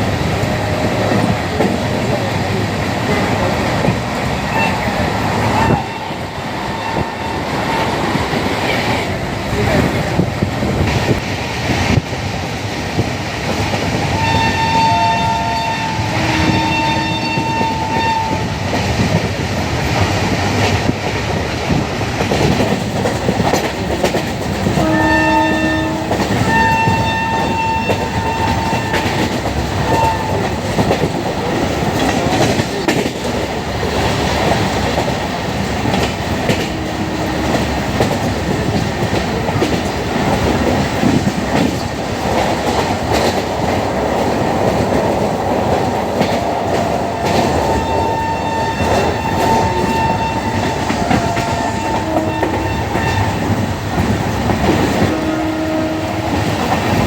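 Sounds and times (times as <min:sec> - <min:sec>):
moving train rumble and clack: 0:00.0 - 0:57.0
shrill train horn: 0:04.5 - 0:08.1, 0:14.1 - 0:18.6, 0:24.7 - 0:31.0, 0:36.5 - 0:38.1, 0:46.7 - 0:53.6, 0:55.0 - 0:56.6.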